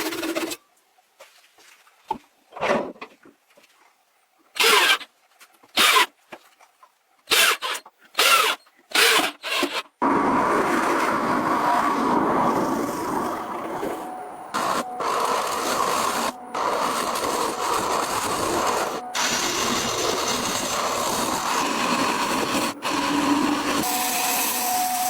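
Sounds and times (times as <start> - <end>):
power tool running: 8.2 - 25.0
wood scraping strokes: 10.0 - 25.0.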